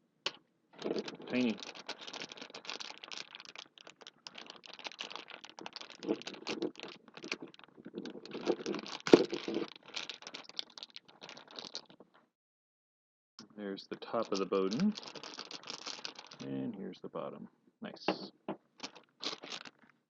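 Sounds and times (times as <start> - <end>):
plastic bags crinkling: 0.8 - 12.0, 14.0 - 16.6, 18.8 - 19.9
small parts clicking and rattling: 0.8 - 12.0, 14.1 - 16.5, 18.8 - 19.9.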